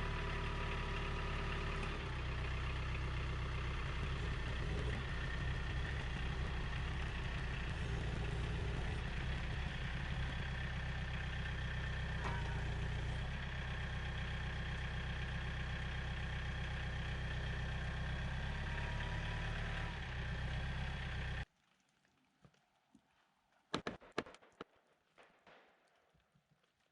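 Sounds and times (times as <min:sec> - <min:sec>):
engine idling: 0:00.0 - 0:21.5.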